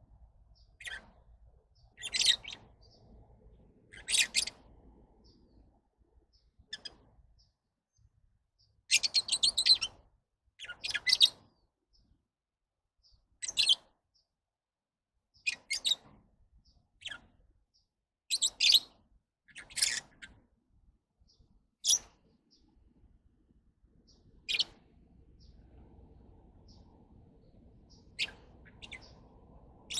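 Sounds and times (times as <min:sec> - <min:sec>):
birds chirping: 0:00.2 - 0:07.6, 0:15.4 - 0:20.5, 0:21.2 - 0:23.1, 0:23.9 - 0:29.9.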